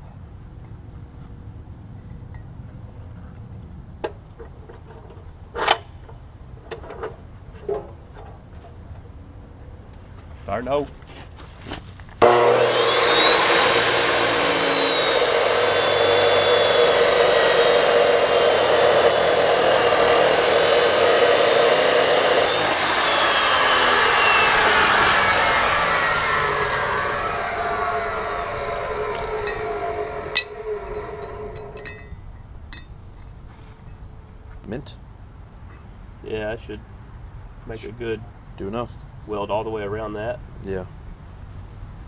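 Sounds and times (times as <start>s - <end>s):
grinder winding down whine: 12.2s - 32.1s
angle grinder grinding steel: 12.2s - 32.2s.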